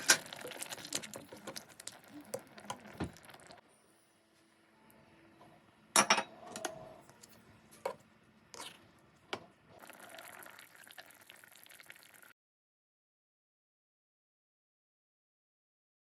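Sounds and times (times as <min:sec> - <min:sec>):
cookware knocks and clinks: 0:06.0 - 0:06.3.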